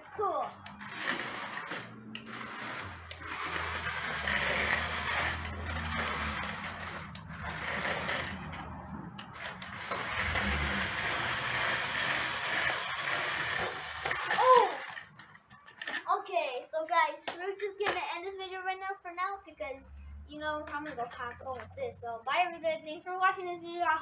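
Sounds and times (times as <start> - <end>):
small electric motors whirring: 0.0 - 16.2.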